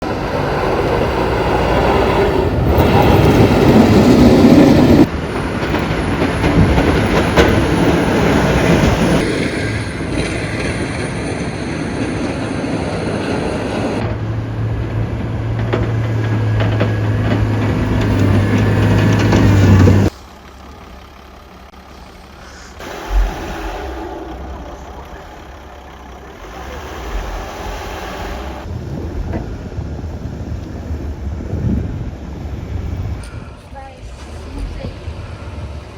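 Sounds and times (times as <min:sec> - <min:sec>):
engine humming: 0:00.0 - 0:35.9
vehicle traffic: 0:00.0 - 0:35.9
thump: 0:22.8 - 0:24.6.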